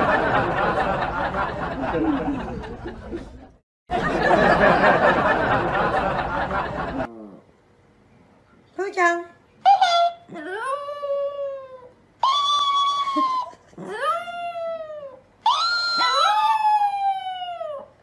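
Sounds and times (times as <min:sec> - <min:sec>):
voices and laughter: 0:00.0 - 0:07.1.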